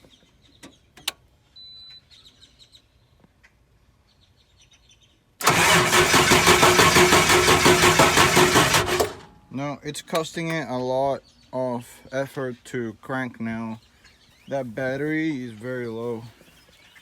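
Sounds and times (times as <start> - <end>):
diesel engine cranking on starter: 5.4 - 9.4.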